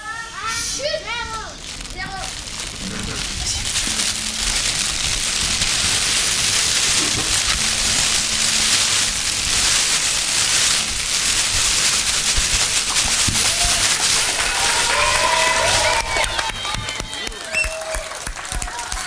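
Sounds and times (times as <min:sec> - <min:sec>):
imitated fire crackling: 0:00.0 - 0:19.0.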